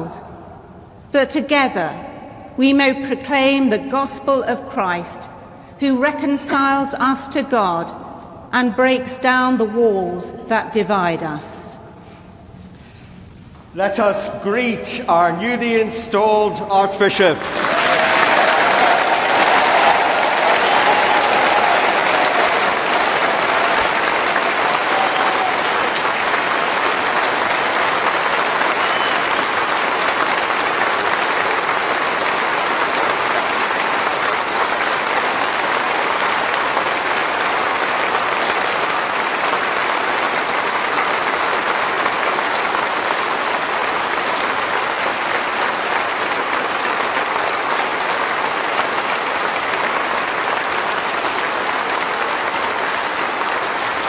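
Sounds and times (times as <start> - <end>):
congregation applauding: 17.0 - 54.0.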